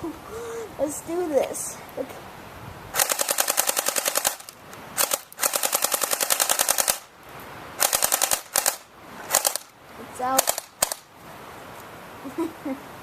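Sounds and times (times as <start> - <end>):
airsoft gun firing bursts: 3.0 - 7.1, 7.8 - 9.7, 10.4 - 11.1.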